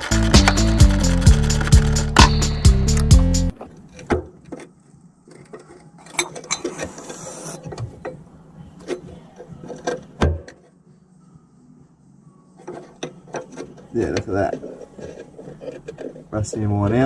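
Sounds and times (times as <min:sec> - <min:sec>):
scratchy noise: 0:00.0 - 0:02.5, 0:06.8 - 0:07.7
background music: 0:00.0 - 0:03.6.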